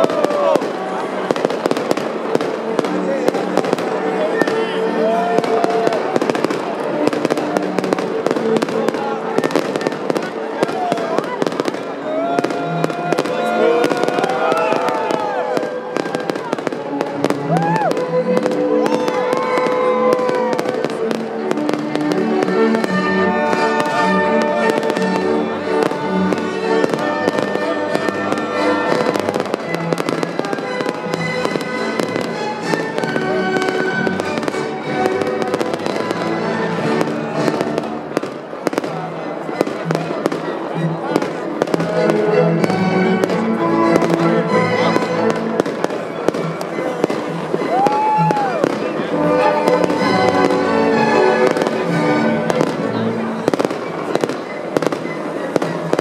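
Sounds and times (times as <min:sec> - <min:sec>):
fireworks banging and crackling: 0:00.0 - 0:56.0
waltz music: 0:00.0 - 0:56.0.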